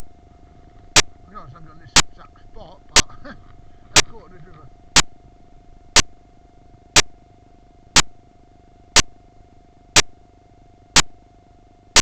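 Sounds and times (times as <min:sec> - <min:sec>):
faint steady tone: 0:00.0 - 0:12.0
sharp clicks: 0:04.0 - 0:05.1, 0:10.0 - 0:10.2, 0:11.0 - 0:11.2.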